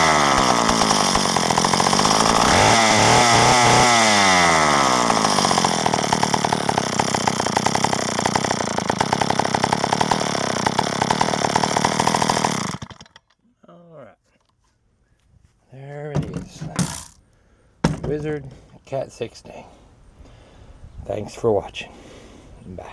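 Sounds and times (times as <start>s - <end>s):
two-stroke chainsaw running: 0.0s - 13.3s.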